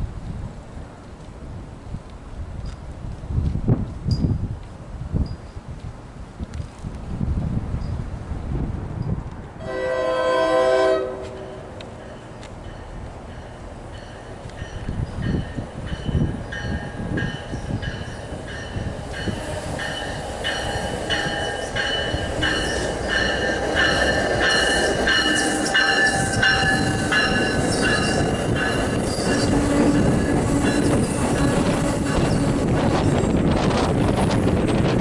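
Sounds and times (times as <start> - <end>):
train rumbling: 0.0 - 35.0
high ringing tone: 14.0 - 29.6.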